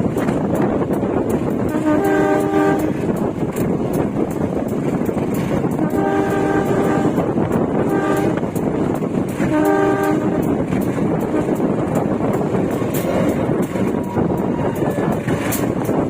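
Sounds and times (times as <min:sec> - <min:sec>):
train wheels rumbling and clattering: 0:00.0 - 0:16.0
train horn blasts: 0:01.6 - 0:03.2, 0:05.7 - 0:08.7, 0:09.3 - 0:10.8, 0:13.2 - 0:15.7.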